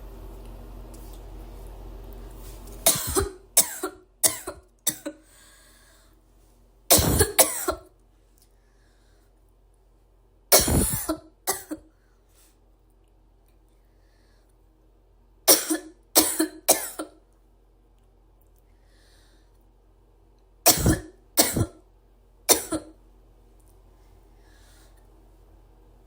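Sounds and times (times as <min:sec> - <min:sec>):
girl coughing: 0:02.9 - 0:05.2, 0:06.9 - 0:07.9, 0:10.5 - 0:11.9, 0:15.5 - 0:17.2, 0:20.7 - 0:21.8, 0:22.5 - 0:23.0.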